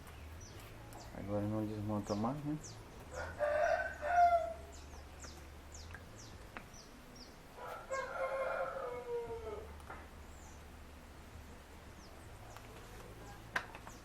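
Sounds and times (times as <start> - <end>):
small birds chirping: 0.0 - 8.1, 8.8 - 14.0
rooster crowing: 3.1 - 4.6, 7.6 - 9.7.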